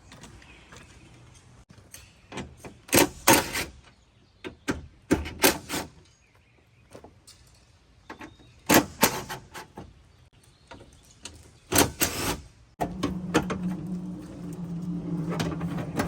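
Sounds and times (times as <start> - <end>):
metal clanks and rattles: 10.8 - 16.0.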